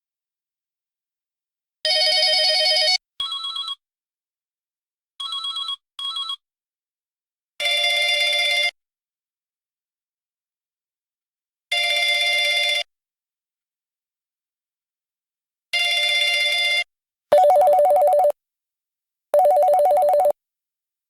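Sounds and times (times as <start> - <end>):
cell phone ringtone: 17.3 - 18.3, 19.4 - 20.3.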